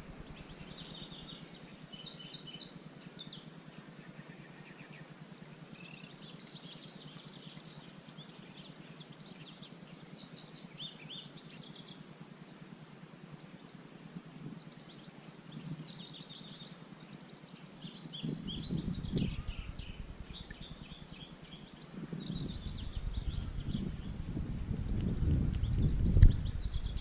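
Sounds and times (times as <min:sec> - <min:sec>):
small birds chirping: 0:00.0 - 0:12.6, 0:13.6 - 0:27.0
low rumble: 0:18.3 - 0:21.1, 0:22.2 - 0:27.0.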